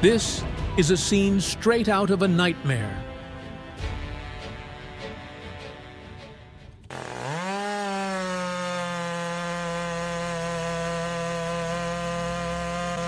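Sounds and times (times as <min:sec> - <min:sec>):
power saw motor: 0:06.8 - 0:13.0.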